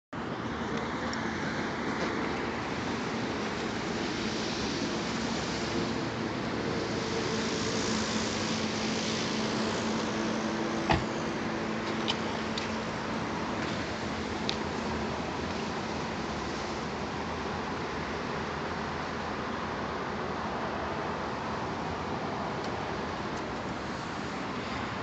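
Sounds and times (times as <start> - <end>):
car engine and cooling fan running: 0.2 - 25.0.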